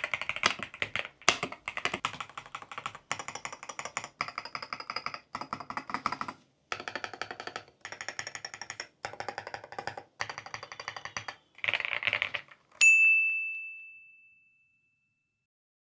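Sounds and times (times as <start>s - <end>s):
rapid keyboard typing: 0.0s - 12.8s
bright ding: 12.8s - 15.2s.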